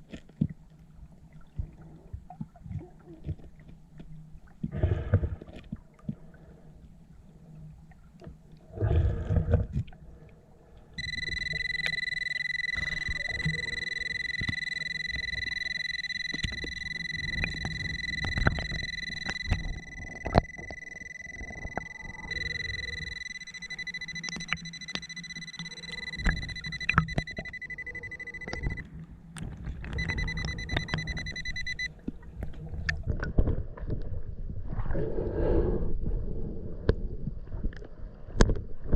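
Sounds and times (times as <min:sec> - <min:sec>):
metal detector high beep tone: 0:11.0 - 0:28.8, 0:30.0 - 0:31.9
scattered clicks: 0:11.0 - 0:28.8, 0:29.8 - 0:31.9.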